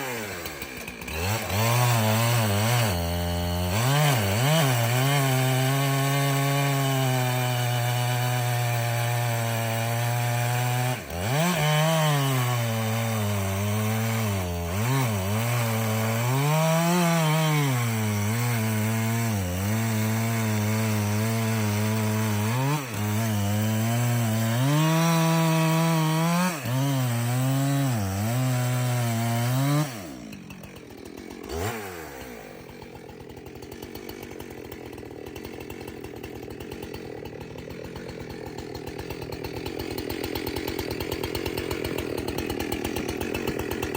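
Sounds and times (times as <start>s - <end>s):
chainsaw cutting log: 0.0s - 43.9s.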